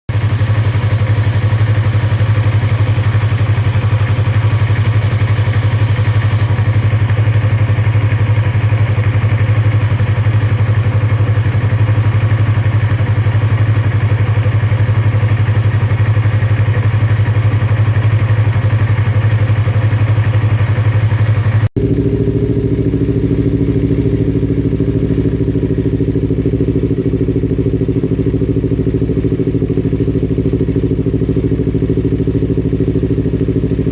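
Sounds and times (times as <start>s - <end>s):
engine running steadily: 0.1s - 33.9s
higher pitched engine running: 21.8s - 27.4s.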